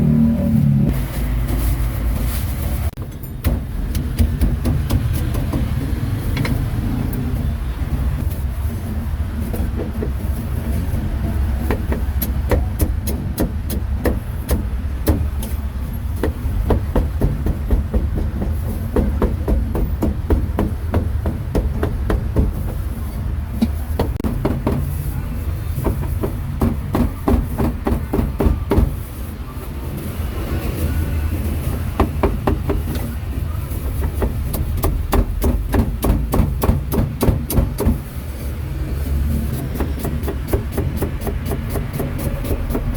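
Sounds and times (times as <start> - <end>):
street traffic rumble: 0.0 - 42.9
cleaver chopping on wooden block: 34.2 - 38.0.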